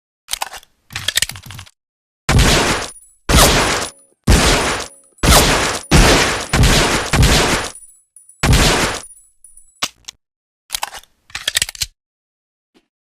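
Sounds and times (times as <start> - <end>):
pistol shots: 2.3 - 7.8, 8.4 - 9.1
metallic clicks and rattles: 4.8 - 11.9.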